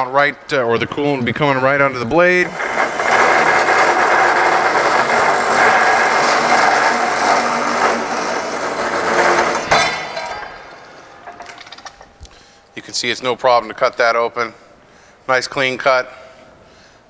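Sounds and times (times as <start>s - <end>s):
saw motor hum: 2.3s - 11.2s
saw blade cutting steel: 2.4s - 11.4s.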